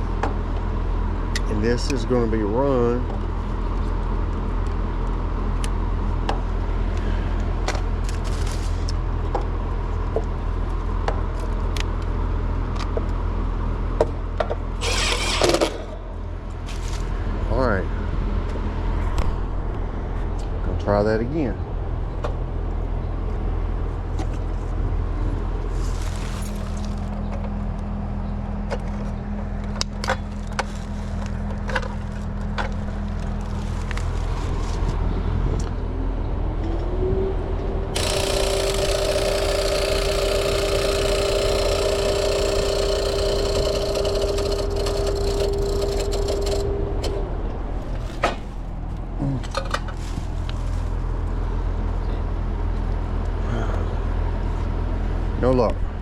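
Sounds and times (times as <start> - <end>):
motor whine with rushing noise: 14.7 - 22.0, 36.4 - 49.2
electrical hum: 14.7 - 52.2
clicks: 38.0 - 47.2.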